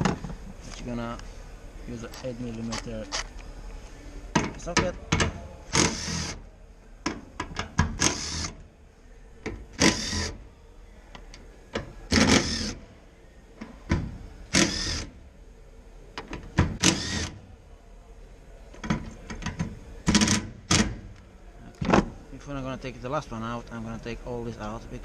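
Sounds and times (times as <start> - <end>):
power tool whirring: 12.1 - 12.8, 14.5 - 15.1.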